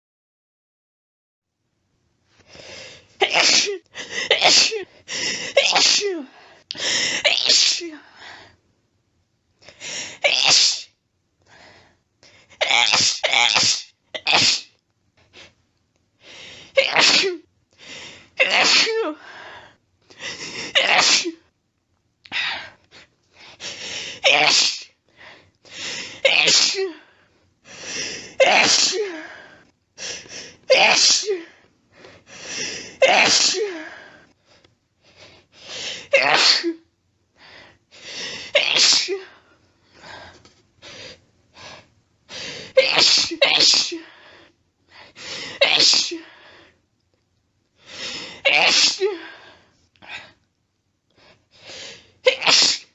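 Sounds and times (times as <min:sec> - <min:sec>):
person sneezing: 0:03.2 - 0:06.3, 0:07.2 - 0:08.0, 0:10.2 - 0:11.0, 0:12.6 - 0:14.8, 0:16.8 - 0:17.5, 0:18.4 - 0:19.2, 0:20.4 - 0:21.4, 0:24.1 - 0:25.0, 0:26.0 - 0:27.0, 0:28.0 - 0:29.4, 0:30.7 - 0:31.5, 0:32.5 - 0:34.1, 0:35.9 - 0:36.8, 0:38.3 - 0:39.4, 0:42.5 - 0:44.2, 0:45.2 - 0:46.4, 0:48.4 - 0:49.5, 0:51.8 - 0:52.9.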